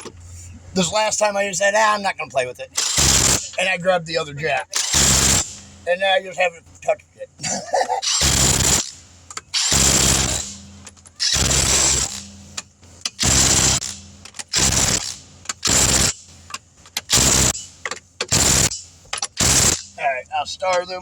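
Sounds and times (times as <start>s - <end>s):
impact wrench bursts: 2.8s - 3.8s, 4.7s - 5.8s, 8.0s - 20.0s.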